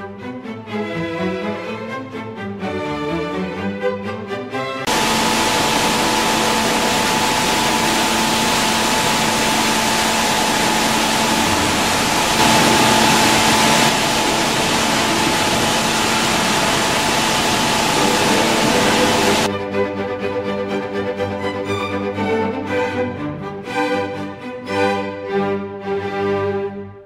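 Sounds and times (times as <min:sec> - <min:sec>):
machinery hum and whine: 0:04.9 - 0:19.5.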